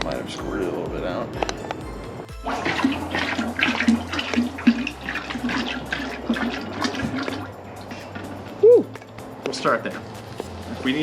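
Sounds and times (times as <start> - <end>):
liquid splashing and gurgling: 2.4 - 9.0.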